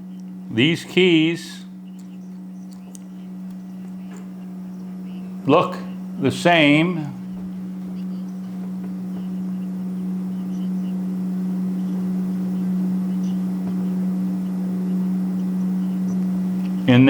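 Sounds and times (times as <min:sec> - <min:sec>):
steady low hum: 0:00.0 - 0:17.0
faint light clicks: 0:01.9 - 0:04.3.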